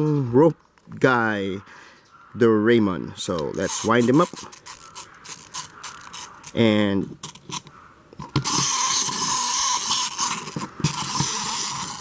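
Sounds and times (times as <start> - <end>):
clockwork spring motor whirring: 3.6 - 6.6, 8.3 - 12.0.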